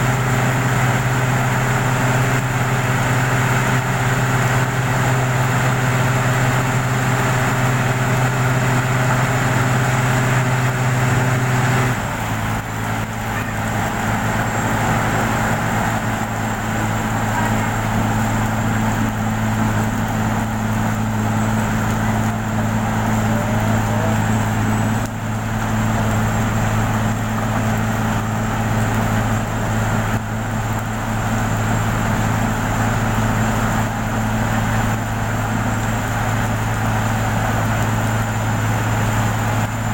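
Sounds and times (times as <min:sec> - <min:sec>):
motor engine running: 0:00.0 - 0:39.9.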